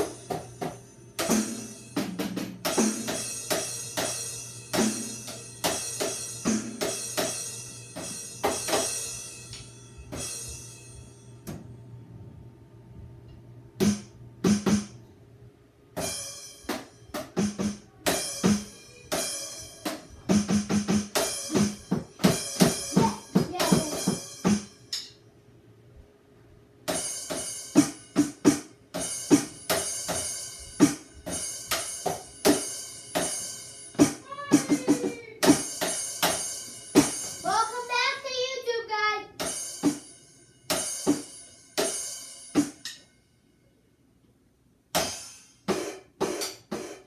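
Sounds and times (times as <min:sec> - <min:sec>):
drum beat: 0:00.0 - 0:09.2, 0:13.8 - 0:15.0, 0:16.0 - 0:24.9, 0:26.9 - 0:38.1.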